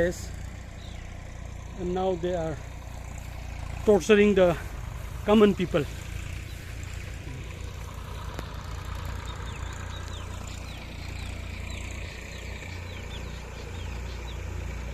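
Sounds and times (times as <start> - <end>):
engine idling: 0.0 - 14.9
high falling chirps: 5.4 - 14.9.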